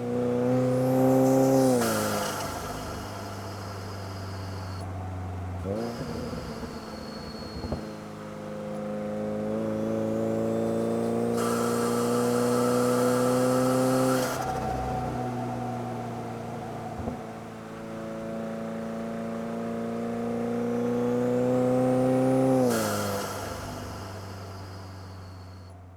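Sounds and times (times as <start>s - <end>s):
car engine revving: 19.9s - 25.6s.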